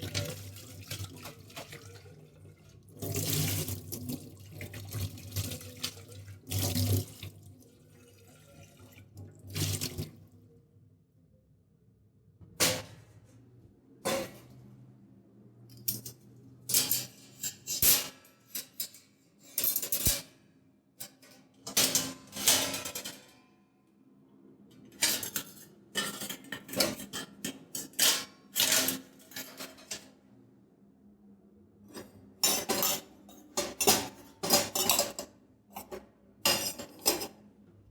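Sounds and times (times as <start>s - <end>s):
metal pots clanking: 32.4s - 37.4s.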